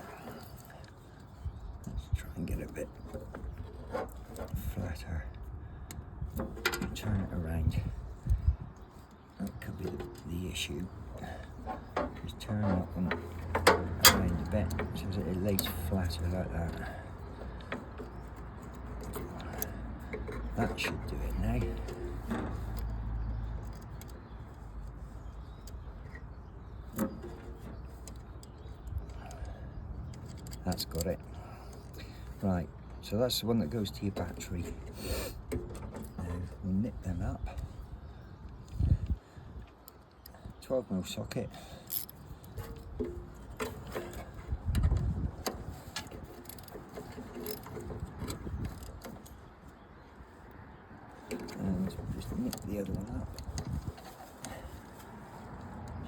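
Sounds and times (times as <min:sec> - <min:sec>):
faint clicks of handling: 0:08.2 - 0:33.0, 0:41.8 - 0:50.6.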